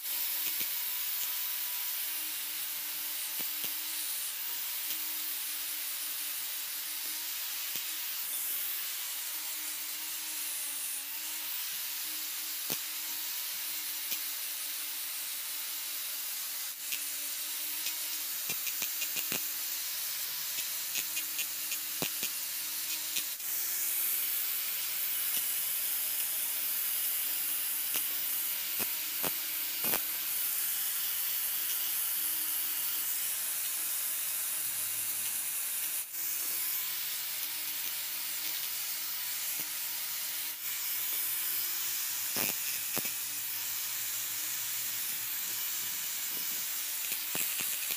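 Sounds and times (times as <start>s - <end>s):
hand sanding hiss: 32.5s - 47.9s.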